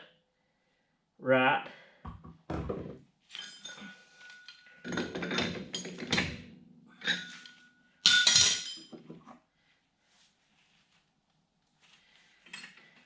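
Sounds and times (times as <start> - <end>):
steel clinking and scraping: 3.3 - 9.1.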